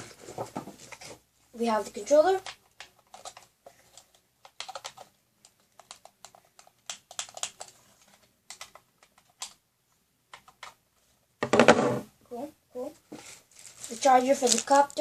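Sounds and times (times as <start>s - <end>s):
packaging clicks and taps: 2.4s - 9.6s.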